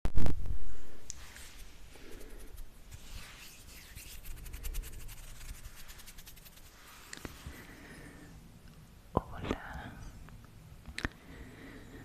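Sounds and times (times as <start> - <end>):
rubbing against microphone: 1.2 - 7.6.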